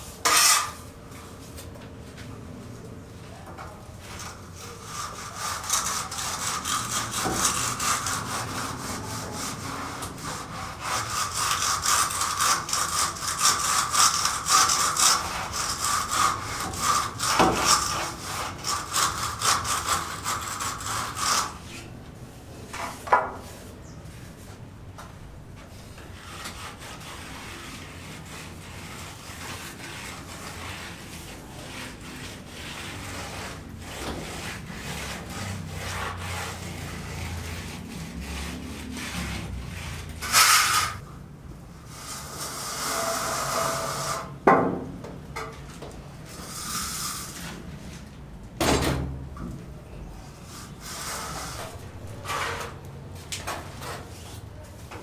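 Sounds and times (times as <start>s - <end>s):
short scrape: 0.0s - 0.9s, 25.8s - 41.2s, 41.8s - 44.4s, 46.3s - 48.0s, 50.1s - 52.8s
hand tool rasping strokes: 4.1s - 21.6s, 26.2s - 41.0s
faint rubbing: 50.0s - 54.7s.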